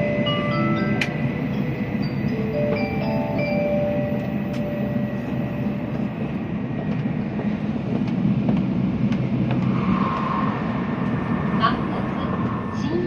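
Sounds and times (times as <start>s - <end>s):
announcement chime: 0.0s - 5.9s
train car running rumble: 0.0s - 13.0s.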